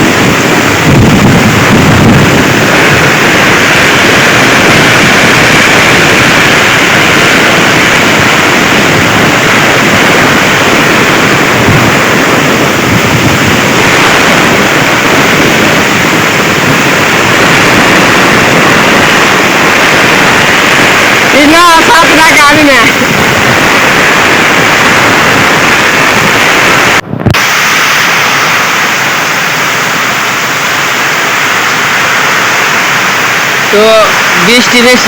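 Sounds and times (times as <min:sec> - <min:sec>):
heavy rain: 0:00.0 - 0:35.0
wind buffeting microphone: 0:00.0 - 0:35.0
wind rushing: 0:00.0 - 0:35.0.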